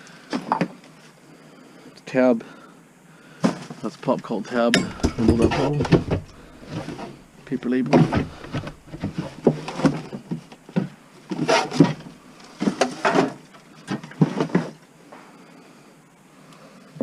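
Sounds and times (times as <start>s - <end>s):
objects knocking and rustling: 4.7s - 14.8s.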